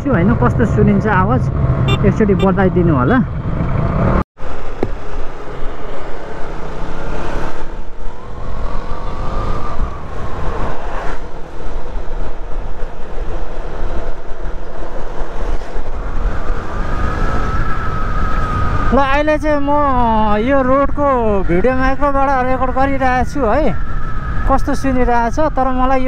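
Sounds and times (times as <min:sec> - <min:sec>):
wind buffeting microphone: 0:00.1 - 0:26.0
motorcycle engine: 0:00.9 - 0:18.9.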